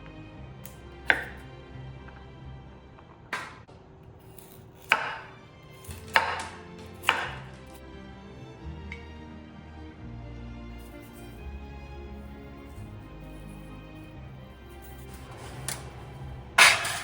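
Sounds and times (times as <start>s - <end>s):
soft background music: 0.0s - 17.0s
knife chopping on cutting board: 0.7s - 1.5s, 3.4s - 3.6s, 4.3s - 7.7s.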